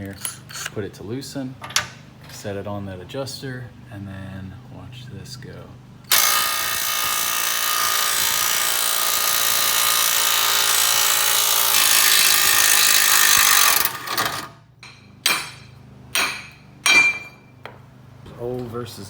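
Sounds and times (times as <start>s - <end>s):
impact wrench hammering: 6.1s - 13.8s, 14.8s - 17.8s.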